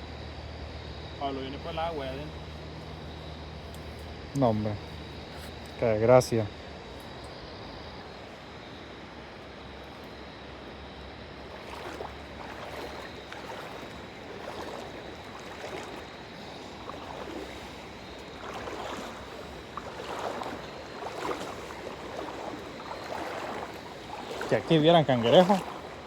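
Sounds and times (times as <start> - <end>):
legs sloshing through shallow water: 6.8 - 26.0.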